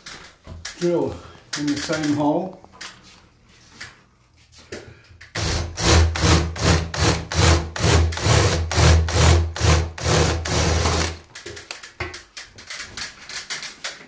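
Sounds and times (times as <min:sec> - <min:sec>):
power drill grinding: 0:05.4 - 0:11.2.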